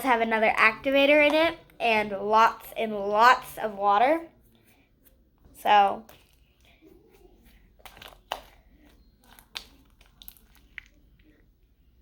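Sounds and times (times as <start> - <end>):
slime squelching and crackling: 5.9 - 11.5
slime popping: 7.8 - 8.6, 9.2 - 11.0.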